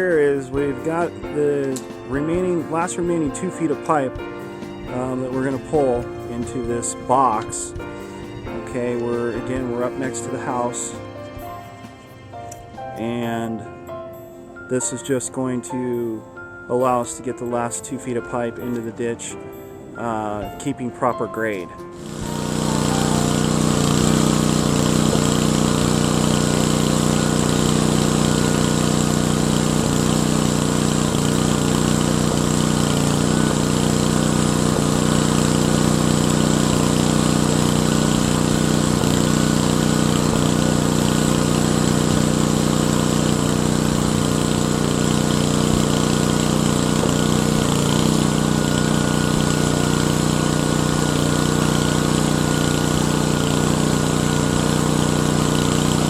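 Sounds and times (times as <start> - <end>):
engine humming steadily: 22.0 - 56.0.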